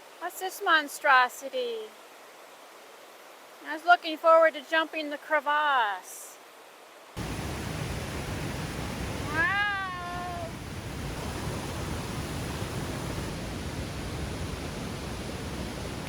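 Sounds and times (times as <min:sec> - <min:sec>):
mountain river rushing: 0:06.4 - 0:16.0
person exclaiming wow: 0:09.3 - 0:10.5.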